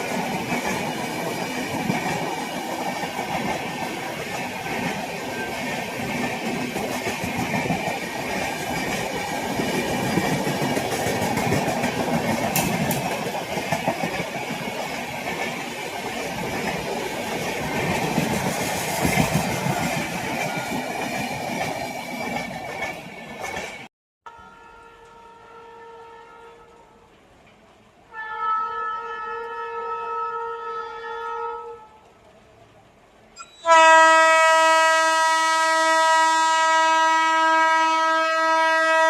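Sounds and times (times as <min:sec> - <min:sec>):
train wheels rumbling and clattering: 0:00.0 - 0:23.9.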